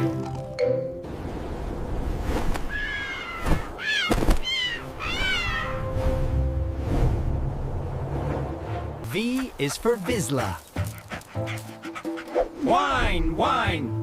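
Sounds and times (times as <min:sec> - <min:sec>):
cat meowing: 0:02.8 - 0:05.8.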